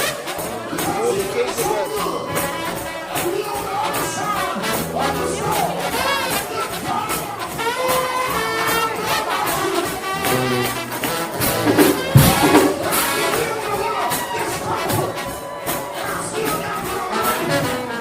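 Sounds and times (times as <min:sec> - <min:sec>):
percussion beat: 0:00.7 - 0:07.6, 0:09.0 - 0:16.5
brass horns with wavering pitch: 0:01.5 - 0:13.7.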